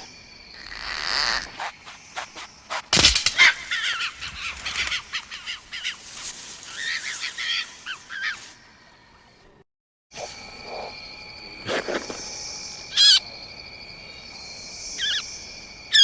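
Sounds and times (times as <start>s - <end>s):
sharp crack: 1.6s - 5.1s.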